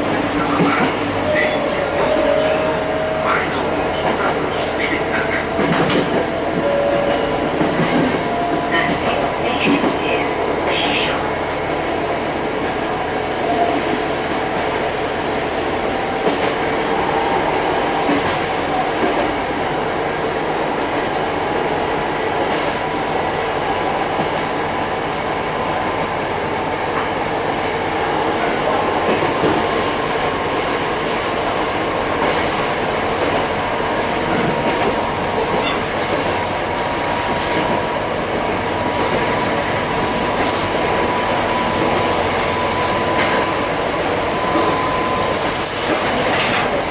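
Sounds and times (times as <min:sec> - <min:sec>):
train wheels rolling on rails: 0:00.0 - 0:46.9.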